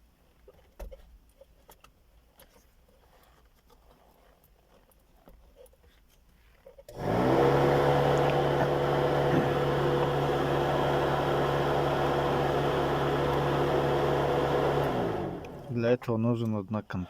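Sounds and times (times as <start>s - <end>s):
electric cooling fan humming: 6.9s - 15.8s.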